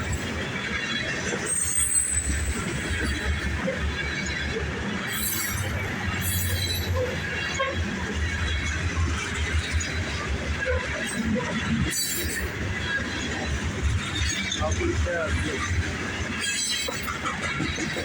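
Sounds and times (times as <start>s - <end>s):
train wheels rumbling on rail: 0.0s - 18.0s
wheel flange squeal: 1.4s - 2.9s, 5.1s - 7.2s.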